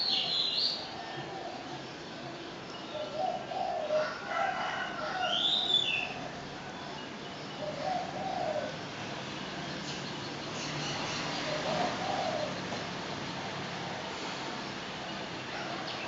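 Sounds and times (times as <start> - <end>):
doves cooing: 0.9 - 6.5, 7.6 - 9.0, 10.6 - 13.0
bird chirp: 5.2 - 13.3.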